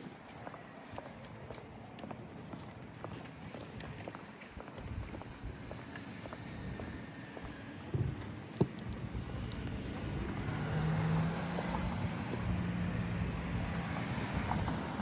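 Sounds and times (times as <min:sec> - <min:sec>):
vehicle engine hum: 0:05.5 - 0:15.0.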